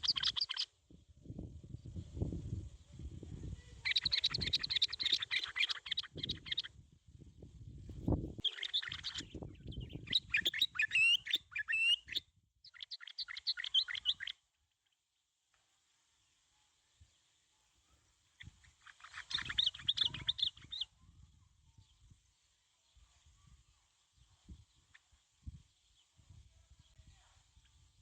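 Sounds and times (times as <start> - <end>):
bulbul chattering calls: 0.0 - 0.7, 3.7 - 6.7, 8.4 - 14.4, 18.4 - 20.9.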